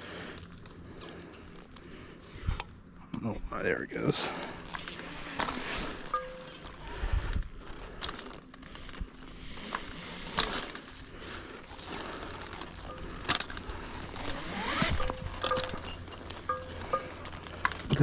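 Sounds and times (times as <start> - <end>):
rope running through hardware: 8.1 - 16.1
metal hardware clinking: 11.6 - 17.9
rising squeak: 14.1 - 16.2.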